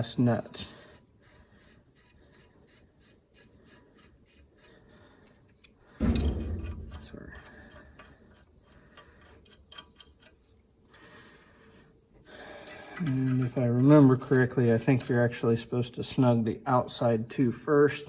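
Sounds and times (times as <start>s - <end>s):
heavy thump: 6.0s - 7.8s.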